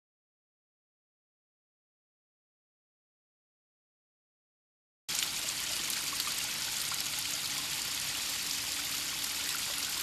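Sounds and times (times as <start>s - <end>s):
stream rushing over rocks: 5.1s - 10.0s.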